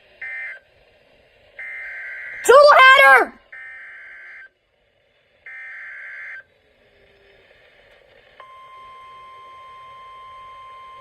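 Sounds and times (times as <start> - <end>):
steady warning alarm tone: 1.6 - 2.4.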